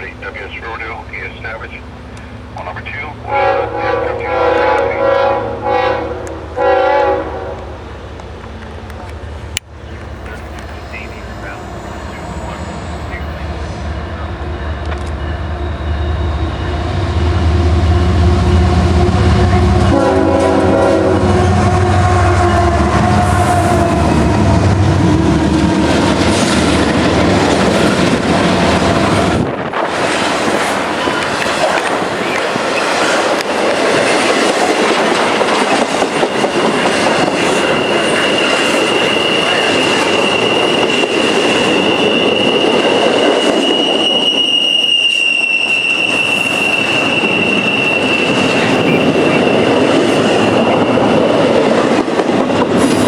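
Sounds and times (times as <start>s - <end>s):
freight train cars rumbling past: 0.0s - 53.0s
high-pitched wheel squeal: 37.4s - 51.3s.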